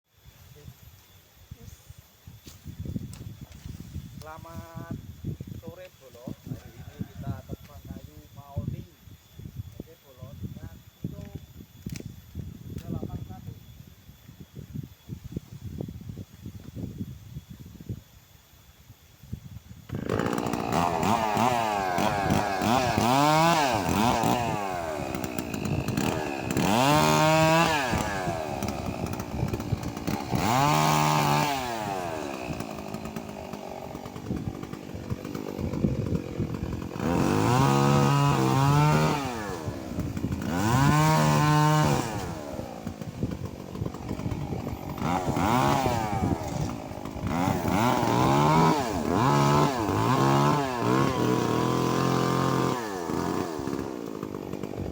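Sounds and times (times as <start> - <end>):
chainsaw cutting wood: 11.1 - 13.0, 19.8 - 54.9.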